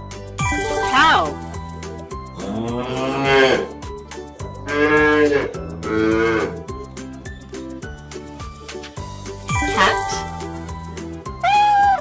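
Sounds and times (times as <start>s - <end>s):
cow mooing: 2.5s - 3.7s, 4.7s - 6.6s.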